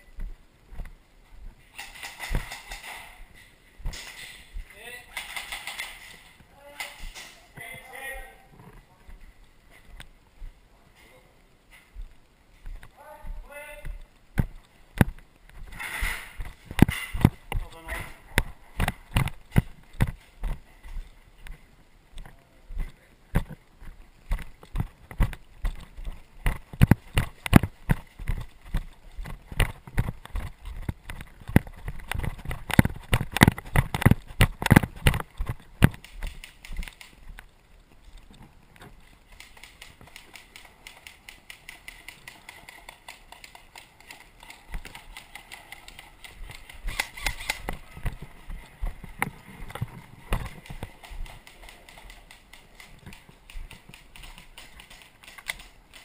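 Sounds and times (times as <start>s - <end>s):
footsteps shuffling: 0.0s - 56.0s
footsteps thumping: 11.7s - 21.7s.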